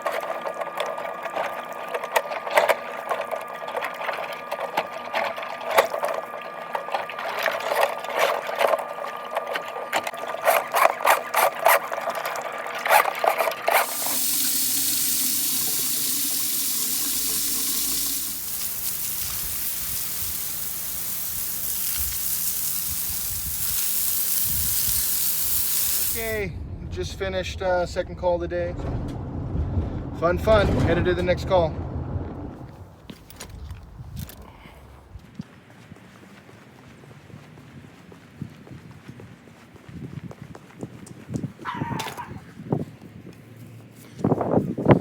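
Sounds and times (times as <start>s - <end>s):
drain cleaning machine rattling: 0.0s - 26.5s
water running with a hiss: 13.7s - 26.4s.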